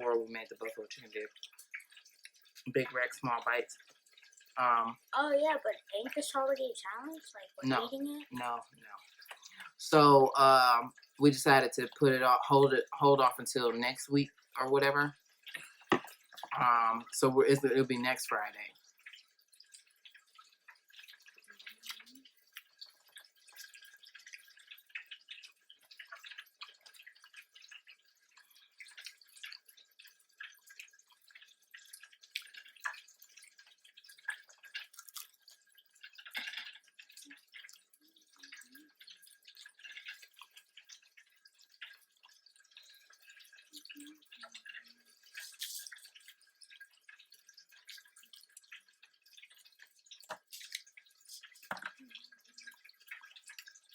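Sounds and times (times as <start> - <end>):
chewing with wet mouth clicks: 1.3 - 2.7, 18.8 - 53.9.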